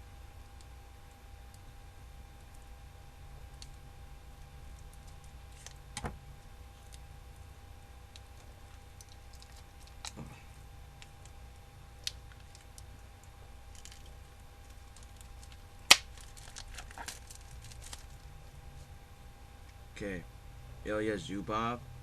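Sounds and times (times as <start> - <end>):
wrapper crinkling and tearing: 13.7 - 18.3
sharp wrapper snaps: 14.7 - 18.2.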